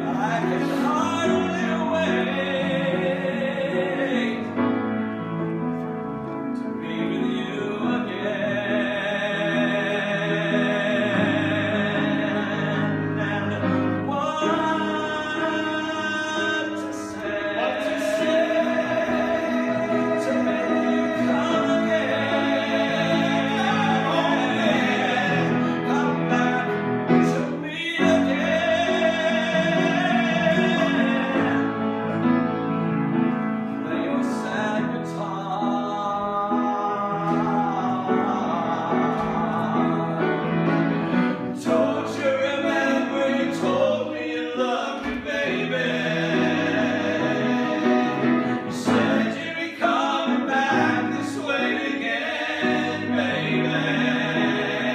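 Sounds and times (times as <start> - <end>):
instrumental accompaniment: 0.0 - 54.9
person singing with vibrato: 6.7 - 32.2.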